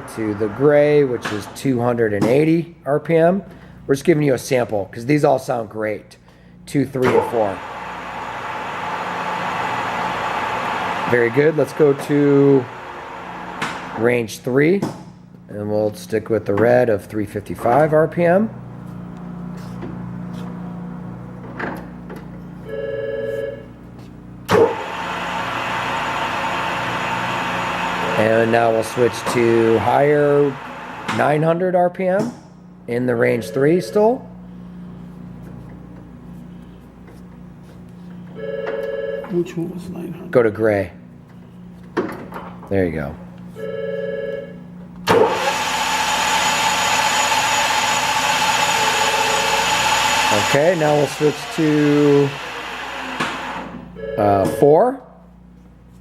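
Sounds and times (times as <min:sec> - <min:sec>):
lathe motor humming: 0:00.0 - 0:01.6, 0:07.4 - 0:14.0, 0:24.6 - 0:31.2, 0:45.1 - 0:53.8.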